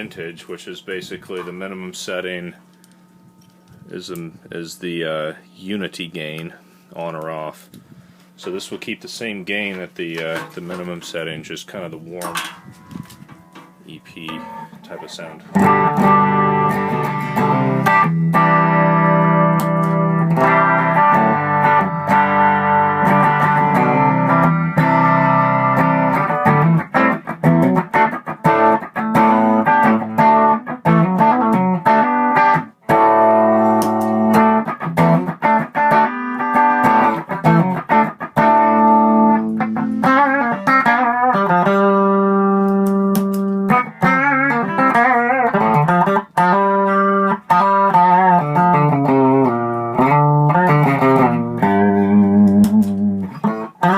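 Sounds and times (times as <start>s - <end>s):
electric guitar chords and notes: 12.3s - 53.9s.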